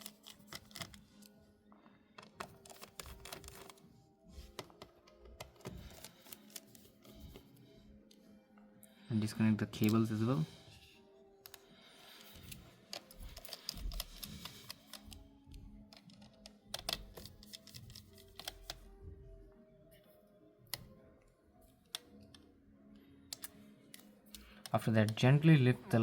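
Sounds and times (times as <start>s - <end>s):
tools clicking on cable connectors: 0.0s - 1.3s, 4.5s - 8.2s, 12.2s - 19.0s, 23.3s - 25.2s
faint background music: 0.0s - 26.0s.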